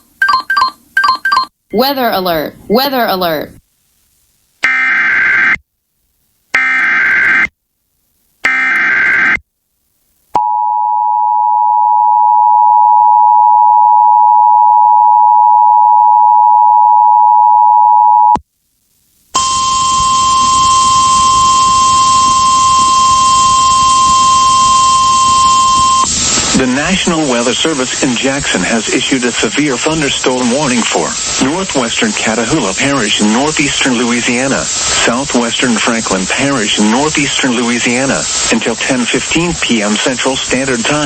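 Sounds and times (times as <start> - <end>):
single-pitch warning tone: 19.4 - 26.1
two-tone attention signal: 19.4 - 26.1
radio hiss: 19.4 - 41.0.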